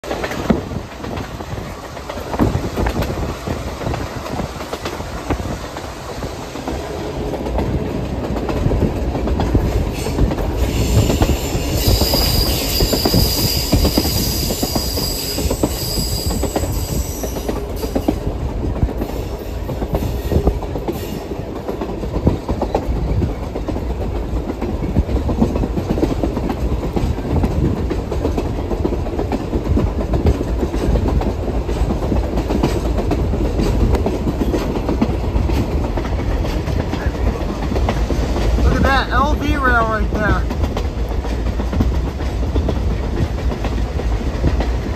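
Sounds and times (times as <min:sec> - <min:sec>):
train wheels clicking over rail joints: 0:00.0 - 0:39.0, 0:40.4 - 0:44.9
train rumble: 0:00.0 - 0:44.9
high wheel squeal: 0:10.0 - 0:17.6.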